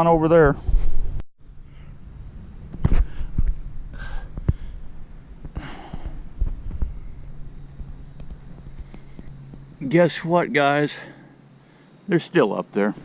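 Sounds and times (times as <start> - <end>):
steady low hum: 0.1 - 13.0
low thumps: 2.4 - 10.3.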